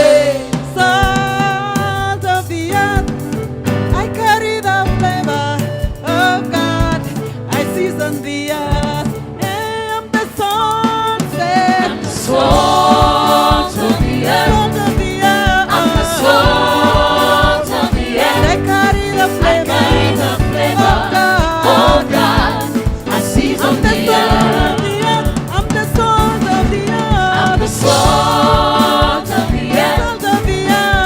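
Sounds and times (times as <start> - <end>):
choir singing: 0.0 - 1.3, 11.4 - 25.4, 27.3 - 31.0
band with steady drum beat: 0.0 - 31.0.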